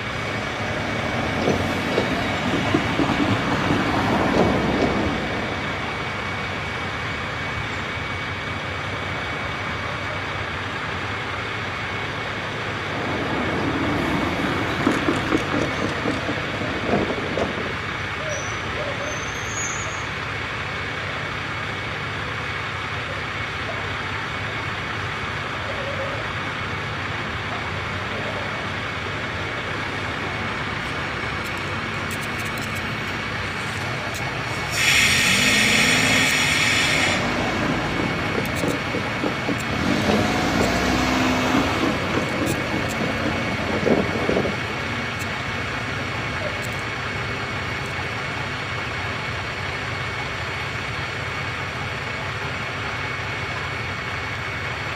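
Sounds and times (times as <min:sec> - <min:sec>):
diesel engine idling: 0:00.0 - 0:54.9
broad hiss: 0:32.2 - 0:37.9
wind buffeting microphone: 0:41.5 - 0:45.0.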